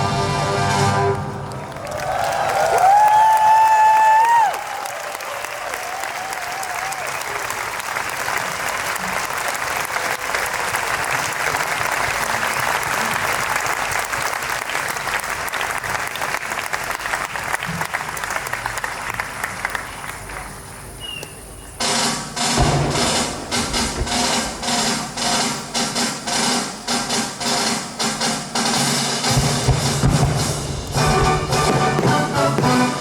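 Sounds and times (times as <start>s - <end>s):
large audience applause: 1.4s - 20.6s.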